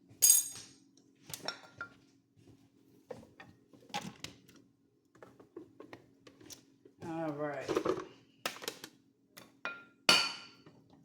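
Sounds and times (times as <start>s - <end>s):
dishes and utensils clinking: 0.2s - 0.8s, 9.7s - 10.6s
metallic ringing clink: 0.2s - 0.8s.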